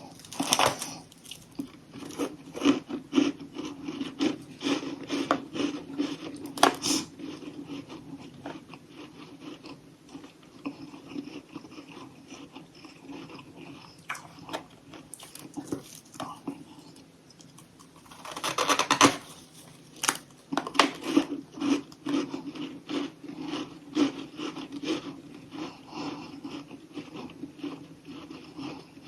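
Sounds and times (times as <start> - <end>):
crunching bites of frost: 0.0 - 2.7, 17.8 - 21.3
steady chewing: 0.0 - 29.0.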